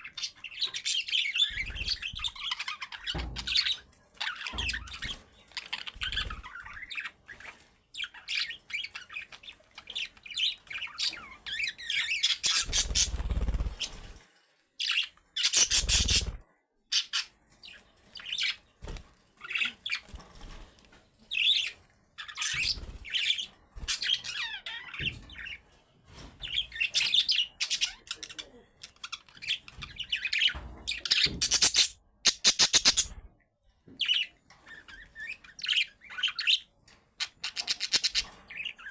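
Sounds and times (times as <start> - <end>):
budgerigars chirping and warbling: 0.0 - 14.2, 14.8 - 20.6, 21.2 - 33.3, 33.9 - 38.9.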